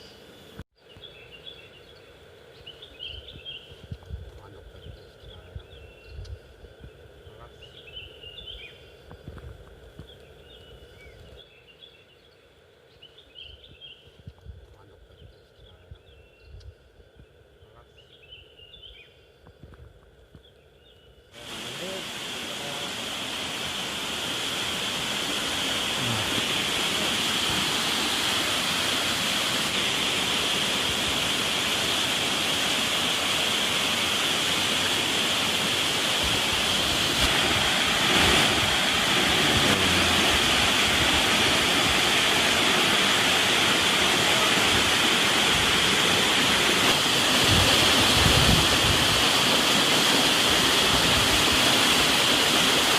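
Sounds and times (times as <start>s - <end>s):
faint bird chirps: 0.0s - 9.4s, 10.0s - 19.7s
waterfall rushing: 21.4s - 52.9s.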